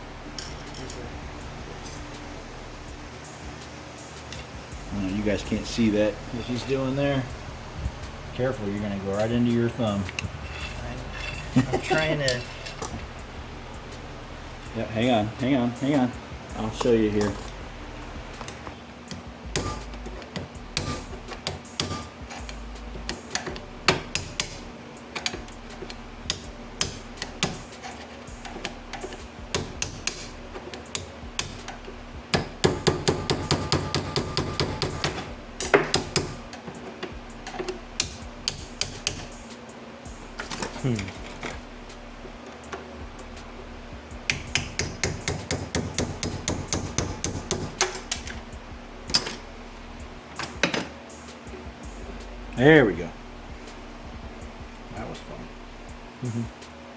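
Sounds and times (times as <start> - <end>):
hammer tapping on metal: 18.4 - 25.5, 26.3 - 27.7, 28.4 - 30.3, 30.9 - 36.5, 37.5 - 39.3, 44.3 - 48.4
metallic clicks of hand tools: 44.3 - 48.4.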